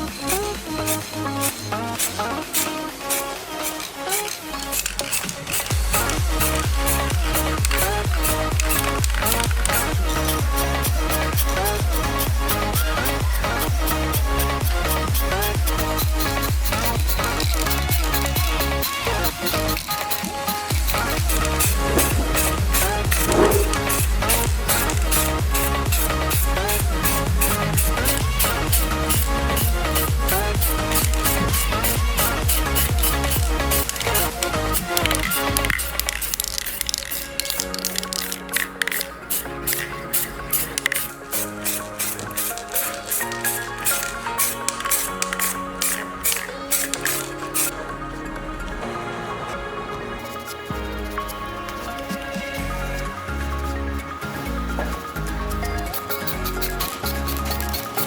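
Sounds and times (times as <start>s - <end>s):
hi-hats: 0.0s - 47.8s, 50.2s - 58.0s
electronic dance music: 0.0s - 58.0s
kick drum: 5.7s - 17.1s, 20.8s - 33.6s.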